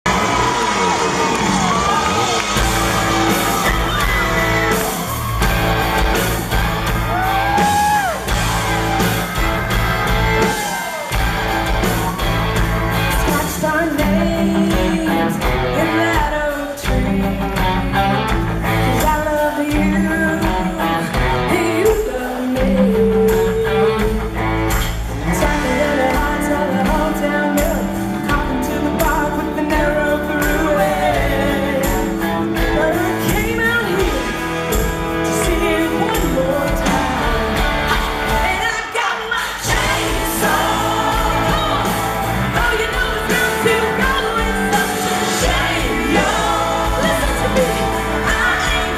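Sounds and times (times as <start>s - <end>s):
country-rock band playing: 0.0s - 48.9s
person singing: 13.1s - 24.5s, 25.2s - 34.6s, 35.2s - 48.9s.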